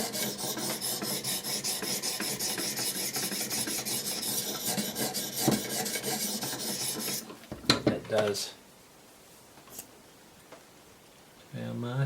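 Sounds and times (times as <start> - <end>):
sharpening stones scraping blade: 0.0 - 7.2.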